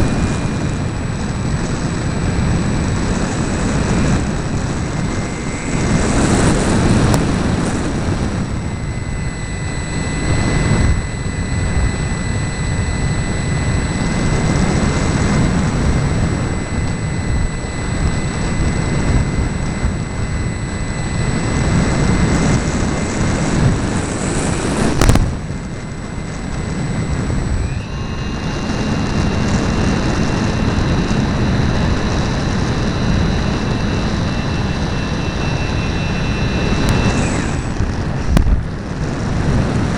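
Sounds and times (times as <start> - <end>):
model airplane motor whine: 0.0 - 39.9
wind buffeting microphone: 0.0 - 39.9.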